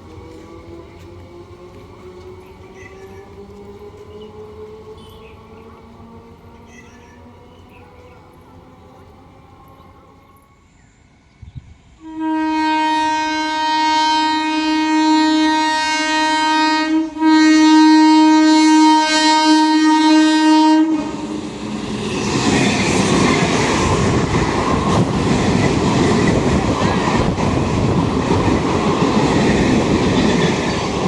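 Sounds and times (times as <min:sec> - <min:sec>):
wheels clattering over rail joints: 0:00.0 - 0:10.4
train rushing rumble: 0:00.0 - 0:31.0
locomotive horn blast: 0:01.7 - 0:10.5, 0:12.0 - 0:21.5.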